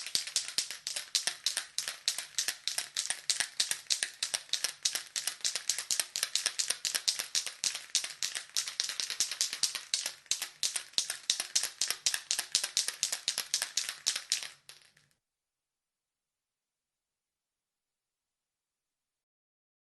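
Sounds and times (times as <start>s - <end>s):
spray can ball rattling: 0.0s - 15.1s.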